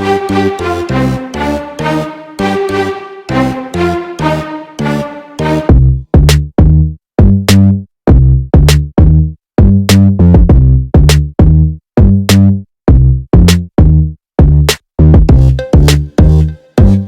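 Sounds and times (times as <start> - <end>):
electronic music with drum-machine beat: 15.2 - 17.0.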